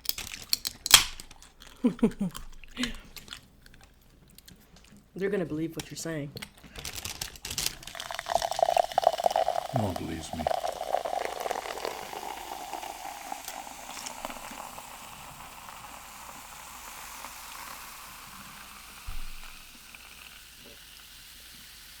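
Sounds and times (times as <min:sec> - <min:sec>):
chewing and crunching: 0:00.0 - 0:05.2, 0:05.8 - 0:08.6
steady hiss: 0:07.7 - 0:22.0
low thump: 0:19.1 - 0:19.6.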